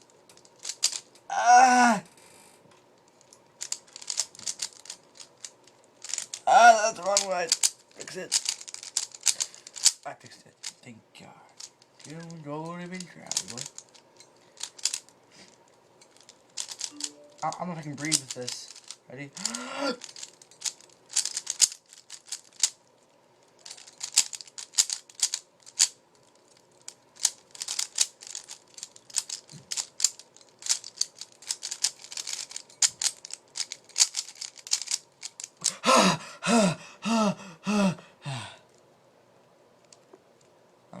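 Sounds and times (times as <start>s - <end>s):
puzzle cube clicking: 0.6s - 1.1s, 3.6s - 10.0s, 11.6s - 14.0s, 14.6s - 15.1s, 16.1s - 22.8s, 23.7s - 26.0s, 27.2s - 36.6s
person calling out: 1.3s - 2.0s, 6.5s - 8.2s, 19.4s - 20.0s, 35.6s - 38.5s.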